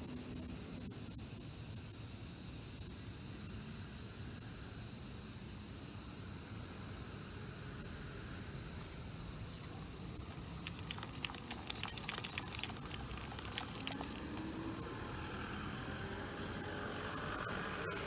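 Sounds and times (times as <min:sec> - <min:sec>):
light irregular clicks: 0:08.8 - 0:16.0
high-pitched insect drone: 0:09.6 - 0:18.0.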